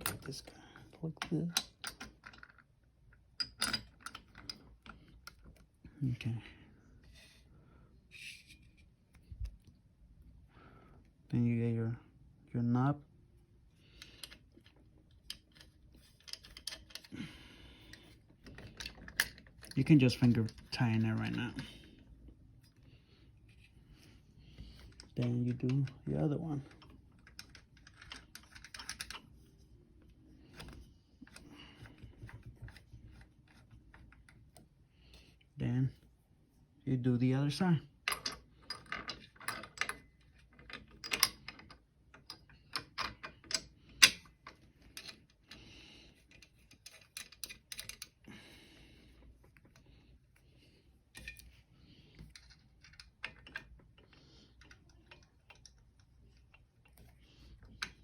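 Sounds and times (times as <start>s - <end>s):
metal parts clicking and tapping: 0.0s - 5.6s, 14.0s - 17.1s, 17.8s - 21.7s, 24.6s - 29.3s, 38.0s - 45.6s, 46.2s - 48.2s, 51.1s - 58.0s.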